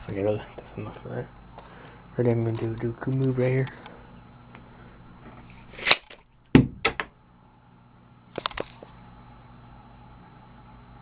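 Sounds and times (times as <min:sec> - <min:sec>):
tape measure blade swishing: 0:05.6 - 0:06.1.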